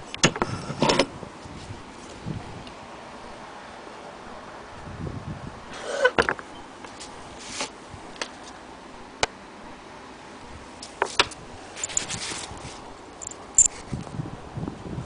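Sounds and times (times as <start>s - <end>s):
handling rustles: 10.8s - 14.1s.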